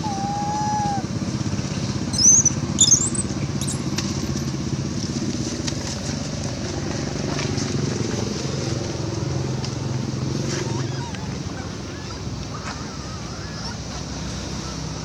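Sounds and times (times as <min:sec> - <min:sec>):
monkey squealing: 0:00.0 - 0:01.1, 0:02.1 - 0:03.3
low motor rumble: 0:00.0 - 0:15.0.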